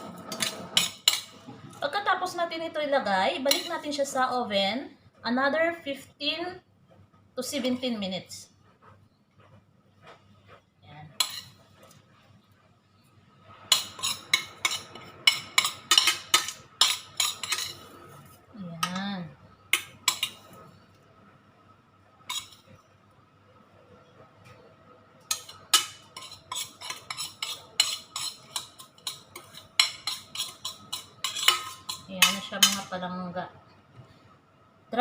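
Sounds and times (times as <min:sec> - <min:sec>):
metal spoon clinking on a pan: 0:00.3 - 0:01.4, 0:03.5 - 0:03.8, 0:11.2 - 0:11.6, 0:13.7 - 0:17.8, 0:19.7 - 0:20.5, 0:22.3 - 0:22.7, 0:25.2 - 0:33.0.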